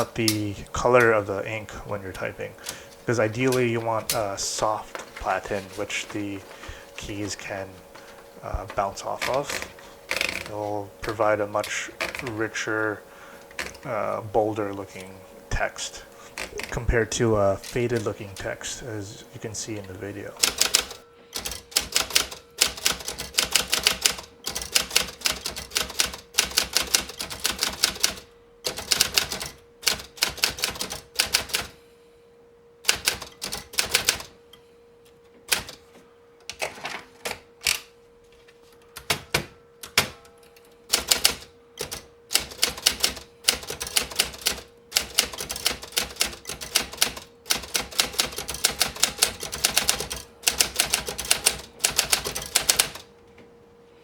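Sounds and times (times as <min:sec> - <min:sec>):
manual typewriter key strikes: 0:20.4 - 0:31.7, 0:40.9 - 0:53.0.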